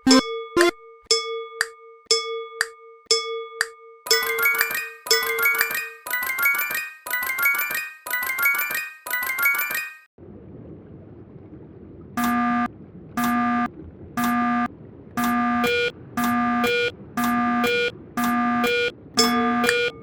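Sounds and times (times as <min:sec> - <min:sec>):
glockenspiel-like music: 0:00.0 - 0:10.1, 0:19.2 - 0:20.0
low steady hum: 0:10.2 - 0:20.0
higher crossing bell ding: 0:18.6 - 0:20.0
railroad crossing bell ringing: 0:18.6 - 0:20.0.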